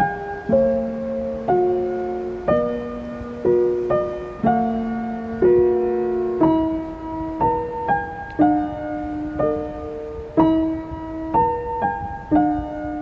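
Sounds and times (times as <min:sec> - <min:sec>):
soft piano chords: 0:00.0 - 0:13.0.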